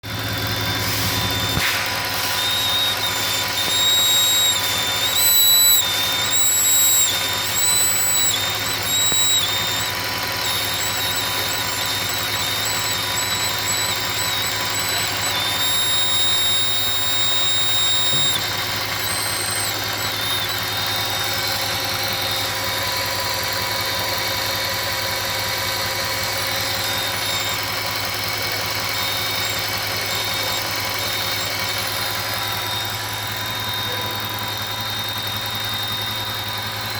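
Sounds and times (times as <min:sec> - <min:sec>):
car engine running: 0:00.0 - 0:36.9
high-pitched air leak whistle: 0:00.1 - 0:36.9.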